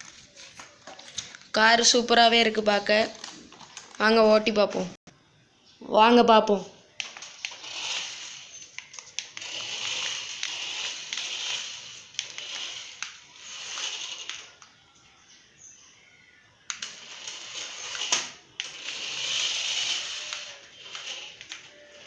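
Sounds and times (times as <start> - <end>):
toy car motor whirring: 7.0 - 14.7, 16.7 - 22.0.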